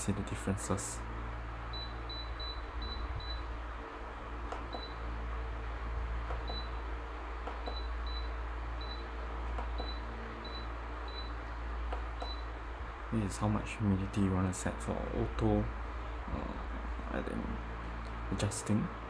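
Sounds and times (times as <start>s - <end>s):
steady low hum: 0.0s - 19.0s
humidifier short high beeps: 1.6s - 3.5s, 4.7s - 5.1s, 6.4s - 6.8s, 7.6s - 9.1s, 9.7s - 11.4s, 12.2s - 12.5s.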